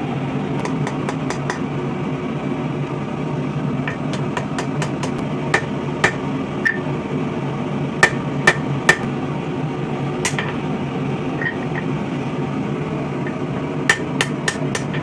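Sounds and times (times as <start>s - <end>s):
hammer striking steel on anvil: 0.6s - 1.6s, 3.9s - 6.8s, 8.0s - 9.1s, 10.2s - 10.6s, 13.2s - 15.0s.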